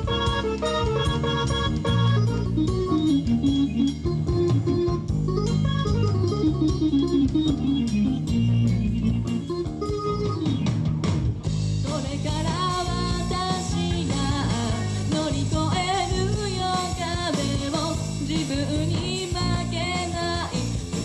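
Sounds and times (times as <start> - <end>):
wavering lead melody: 0.0 - 11.0
rock band playing: 0.0 - 21.0.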